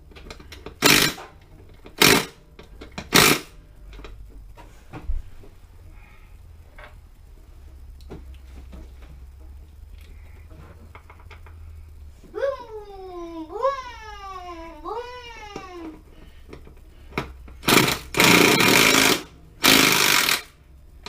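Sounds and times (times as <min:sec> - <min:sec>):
low steady hum: 0:00.0 - 0:21.0
clinks and taps of tools: 0:10.9 - 0:11.6.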